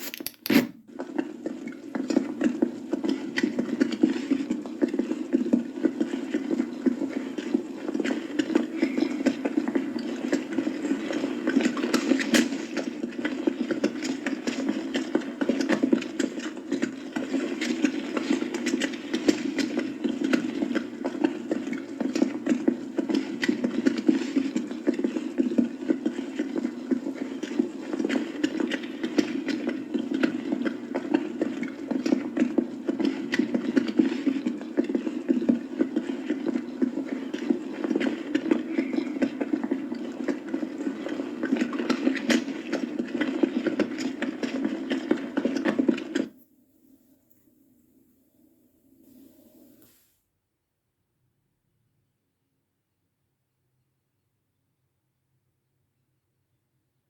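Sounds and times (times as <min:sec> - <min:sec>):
hooves clip-clopping on street: 0:01.0 - 0:46.3.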